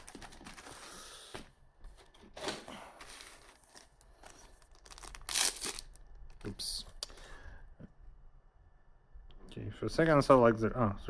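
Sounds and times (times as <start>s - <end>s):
wrapper rustling: 0.0s - 1.0s, 2.3s - 6.5s
wrapper tearing: 2.4s - 6.4s.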